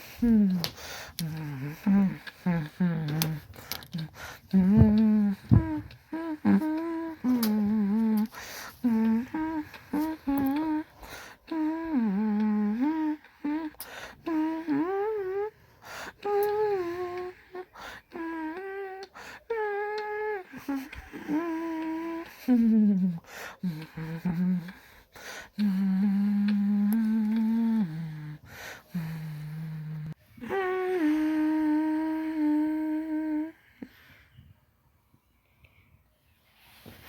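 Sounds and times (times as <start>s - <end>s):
person humming: 0.0s - 34.0s.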